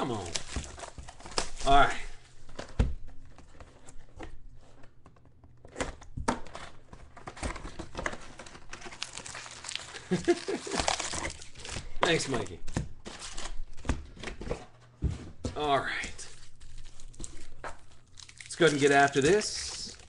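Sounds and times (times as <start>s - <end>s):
foil wrappers crinkling and tearing: 0.0s - 2.0s, 8.0s - 13.7s, 16.2s - 20.0s.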